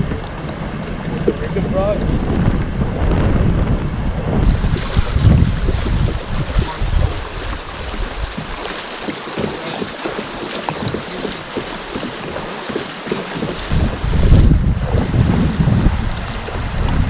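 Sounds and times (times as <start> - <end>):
wind buffeting microphone: 0.0 - 17.0
water hissing and splashing: 4.4 - 14.7.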